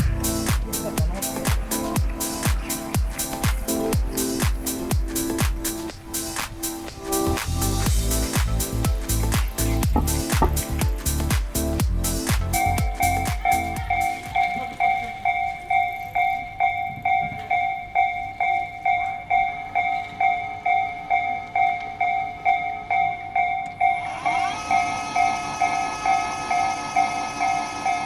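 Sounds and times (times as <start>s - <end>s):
level crossing warning bell: 12.5s - 28.0s
electric train motor whine: 24.0s - 28.0s.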